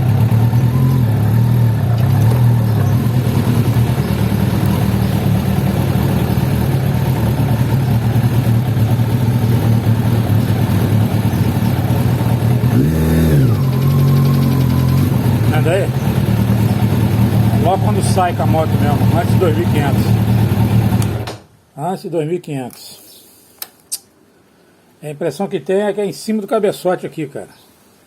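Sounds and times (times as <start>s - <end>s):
motorcycle engine idling: 0.0s - 21.4s.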